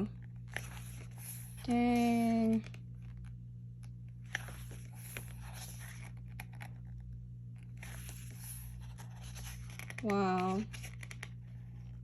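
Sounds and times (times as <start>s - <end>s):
low steady hum: 0.0s - 12.0s
pages turning: 0.2s - 12.0s.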